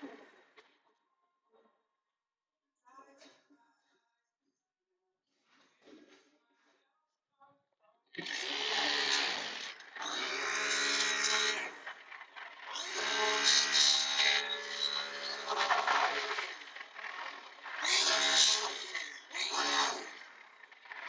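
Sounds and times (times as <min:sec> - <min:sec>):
electric power tool motor: 0:08.2 - 0:21.0.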